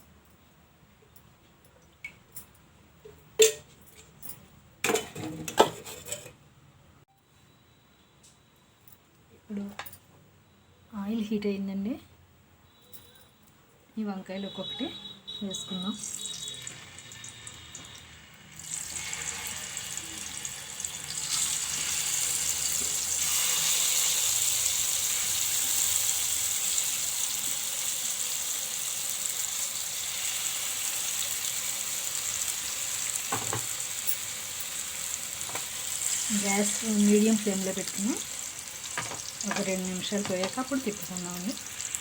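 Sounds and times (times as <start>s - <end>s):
eggplants sizzling in hot oil: 15.7s - 42.0s.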